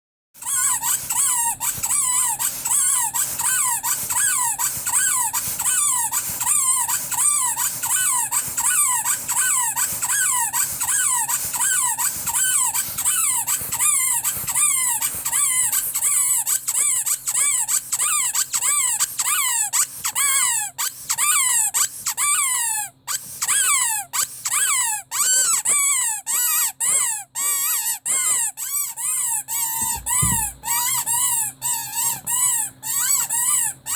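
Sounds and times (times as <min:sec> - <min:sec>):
rubber squeaky toy squeaking: 0:00.4 - 0:33.9.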